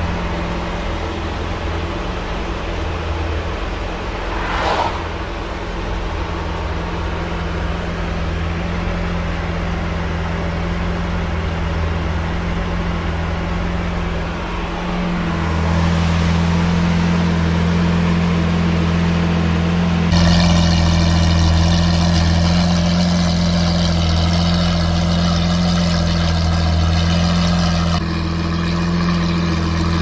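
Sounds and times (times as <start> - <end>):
car engine running: 0.0 - 30.0
brief rushing noise: 4.0 - 6.1.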